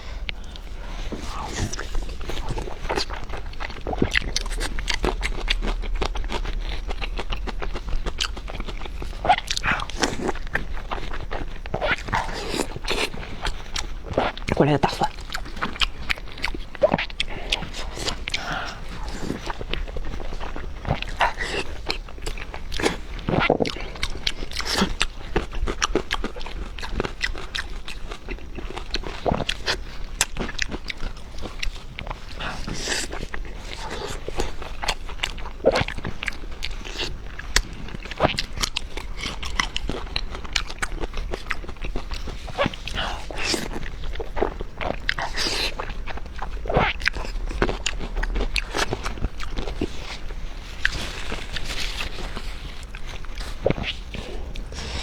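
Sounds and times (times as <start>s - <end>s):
person chewing and crunching: 0.0s - 55.0s.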